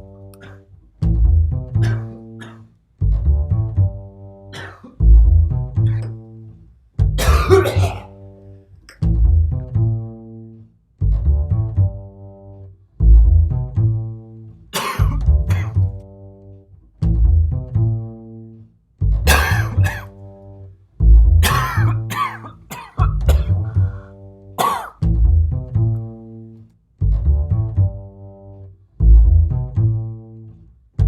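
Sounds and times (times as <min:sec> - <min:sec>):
plucked double bass: 0:00.0 - 0:31.0
person coughing: 0:00.4 - 0:00.7, 0:01.8 - 0:02.7, 0:04.6 - 0:05.0, 0:07.2 - 0:08.1, 0:14.8 - 0:15.8, 0:19.3 - 0:20.1, 0:21.4 - 0:25.0.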